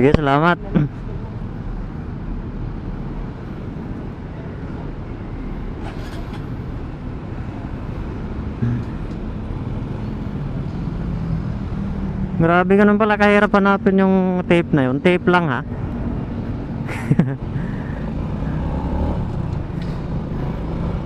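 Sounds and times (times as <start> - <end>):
road and wind rumble: 0.0 - 21.0.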